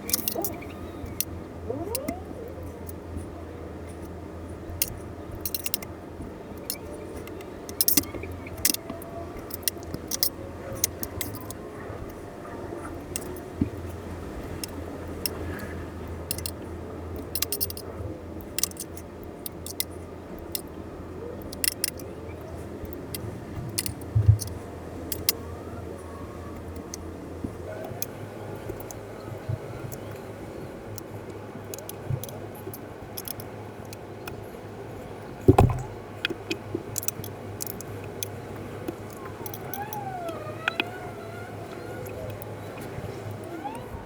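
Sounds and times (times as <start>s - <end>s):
watch parts clicking and clinking: 0.0s - 2.2s, 4.7s - 5.9s, 6.6s - 8.8s, 9.4s - 11.6s, 13.0s - 13.5s, 16.3s - 16.6s, 17.2s - 17.8s, 18.4s - 20.7s, 21.4s - 22.1s, 31.0s - 34.4s, 35.5s - 39.9s
steady low hum: 0.0s - 44.0s.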